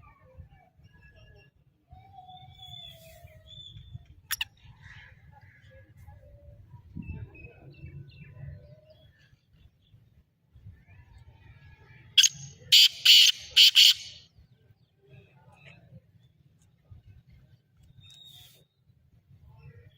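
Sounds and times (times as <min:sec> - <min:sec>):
birds chirping and whistling: 0:12.2 - 0:14.2.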